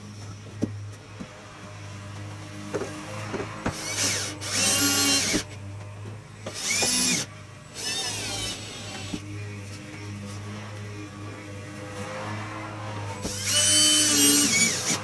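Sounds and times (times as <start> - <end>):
power drill whining: 3.6 - 5.6, 6.4 - 9.2, 13.2 - 15.0.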